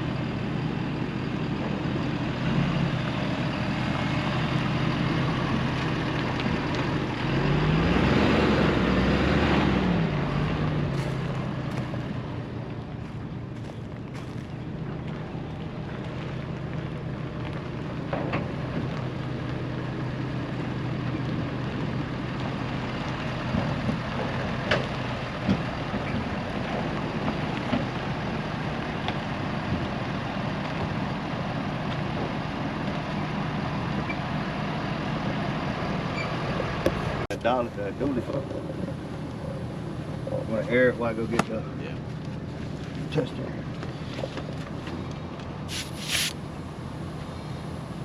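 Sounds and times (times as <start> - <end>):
vehicle engine humming: 0.0 - 48.0.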